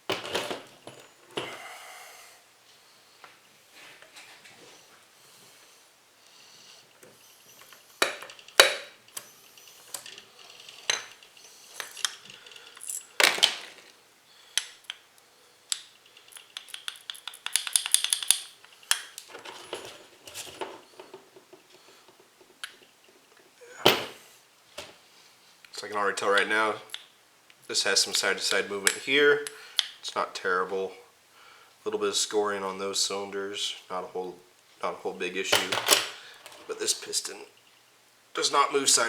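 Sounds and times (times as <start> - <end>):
metal parts clinking together: 7.6 - 14.0, 15.7 - 21.2.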